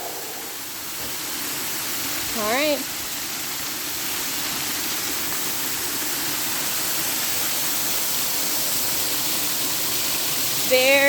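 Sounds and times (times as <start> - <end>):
water rushing: 0.0 - 11.0.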